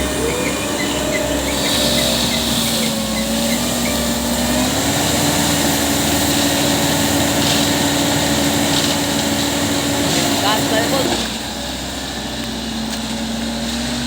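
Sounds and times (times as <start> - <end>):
construction machine engine running: 0.0 - 14.0.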